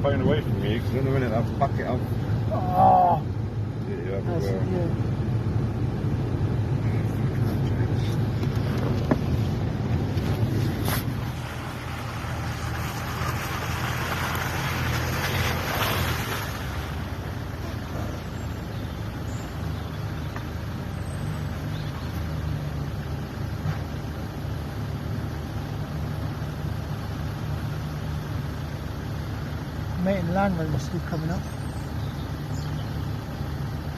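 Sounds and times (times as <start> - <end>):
engine running at low revs: 0.0 - 33.9.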